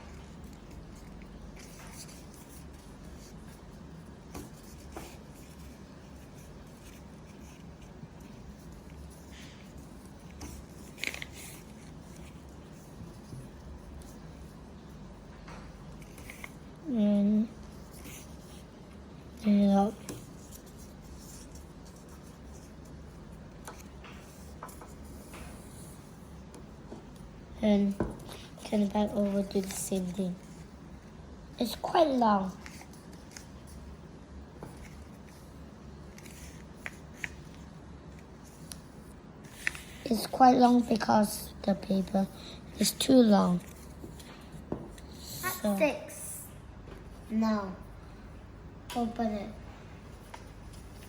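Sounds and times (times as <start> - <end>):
paper rustling while folded: 0.0 - 14.6, 38.4 - 42.2
paper crinkles: 4.4 - 14.3.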